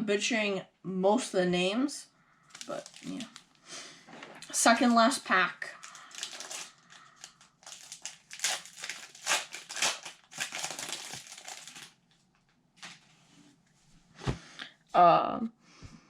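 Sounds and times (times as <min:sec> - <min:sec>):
wrapper tearing and crinkling: 0:02.5 - 0:03.6, 0:05.8 - 0:12.2.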